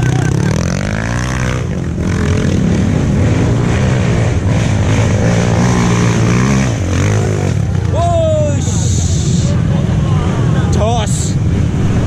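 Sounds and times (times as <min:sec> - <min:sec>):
motorcycle engine revving hard: 0:00.0 - 0:08.0.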